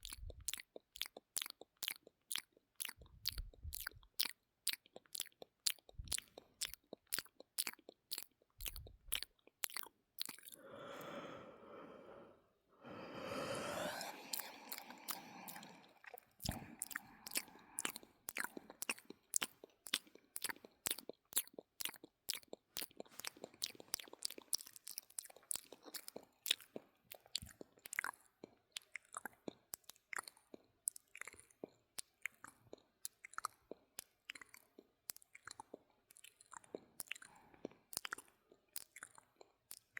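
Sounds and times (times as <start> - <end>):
tongue and lip clicks: 0.0 - 11.2, 13.2 - 39.9
long breaths: 10.6 - 18.1.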